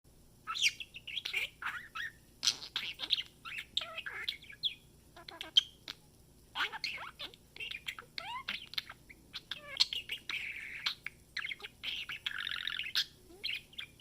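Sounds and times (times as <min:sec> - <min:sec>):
budgerigar chattering: 0:00.5 - 0:06.0, 0:06.6 - 0:14.0.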